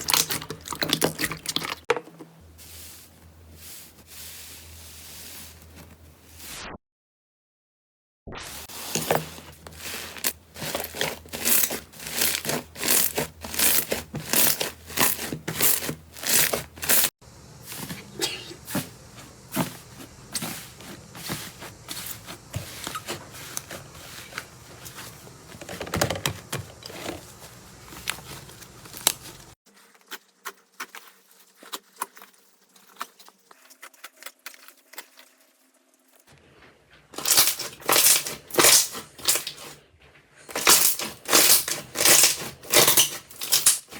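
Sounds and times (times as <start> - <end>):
slime squishing by hand: 0.0 - 1.9, 8.6 - 25.7, 26.4 - 35.4, 37.2 - 39.8, 40.5 - 43.9.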